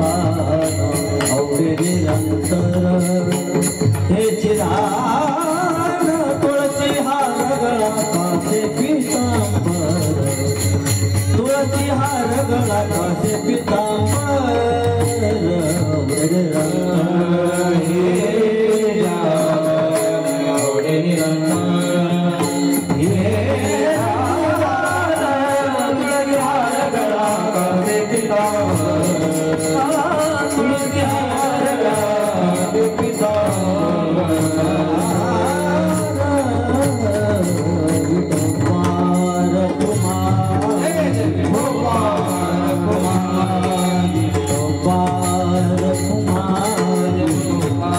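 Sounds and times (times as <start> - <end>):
man singing devotional melody: 0.0 - 47.9
percussion fast beat: 0.0 - 47.9.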